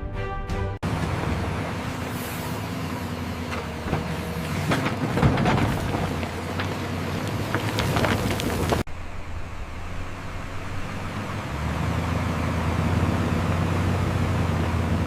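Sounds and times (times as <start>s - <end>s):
large engine droning: 0.8s - 15.0s
heavy machinery rattling: 3.1s - 8.9s.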